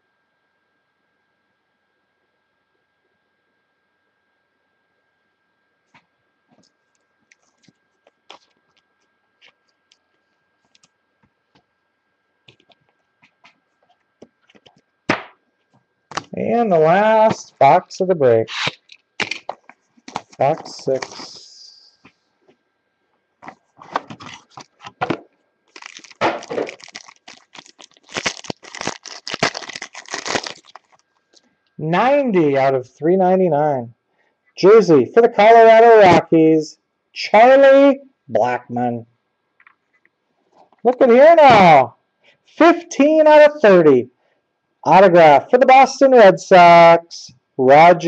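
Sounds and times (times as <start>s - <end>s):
wrapper crinkling and tearing: 18.5s - 21.4s, 23.8s - 25.0s, 25.7s - 31.4s.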